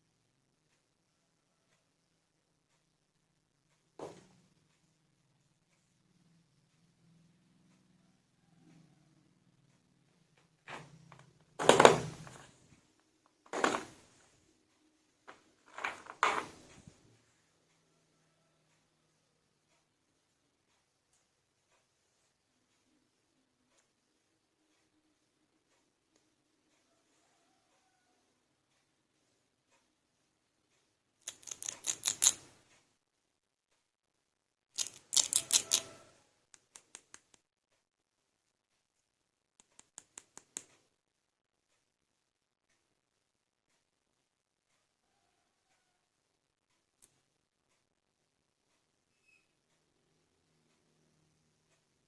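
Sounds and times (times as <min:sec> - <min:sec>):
plastic toys knocking and clattering: 0:10.7 - 0:12.6, 0:13.5 - 0:14.2, 0:15.3 - 0:16.9, 0:31.2 - 0:32.5, 0:34.8 - 0:36.0
plastic toy pieces clicking: 0:31.2 - 0:32.5, 0:34.8 - 0:36.0.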